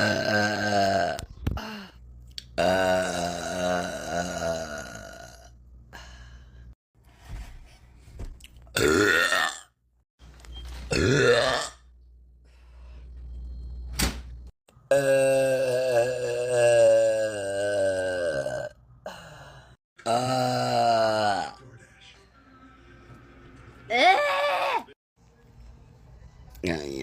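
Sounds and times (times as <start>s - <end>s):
woman belching: 0.0s - 1.2s, 2.6s - 5.5s, 8.8s - 9.7s, 10.9s - 11.8s, 14.9s - 18.8s, 20.0s - 21.6s.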